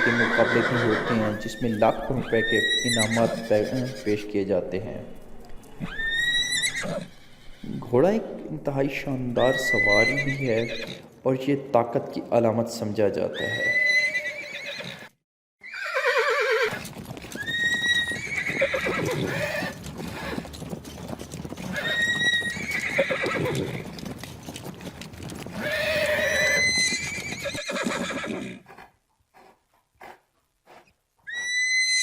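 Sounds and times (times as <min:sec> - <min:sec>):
horse neighing: 0:00.0 - 0:04.4, 0:05.6 - 0:07.9, 0:09.4 - 0:11.1, 0:13.3 - 0:20.6, 0:21.6 - 0:24.0, 0:25.5 - 0:28.8
hooves clopping: 0:00.0 - 0:11.3, 0:16.0 - 0:31.4.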